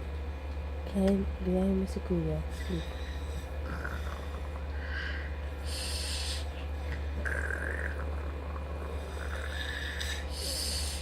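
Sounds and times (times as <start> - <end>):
low hum: 0.0 - 11.0
child mock snoring: 3.6 - 6.5, 7.2 - 11.0.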